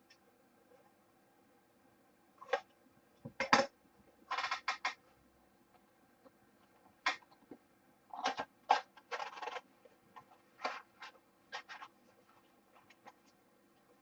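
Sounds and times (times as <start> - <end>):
small box packaging being handled: 8.2 - 14.0.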